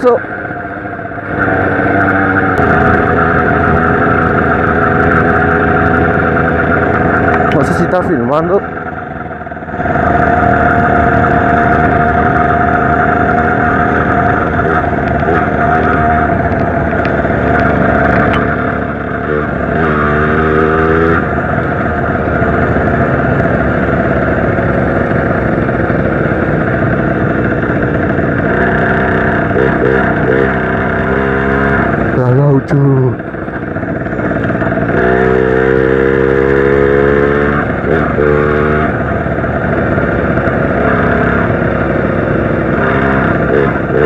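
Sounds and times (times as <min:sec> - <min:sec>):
two-stroke moped engine running: 0:00.0 - 0:44.0.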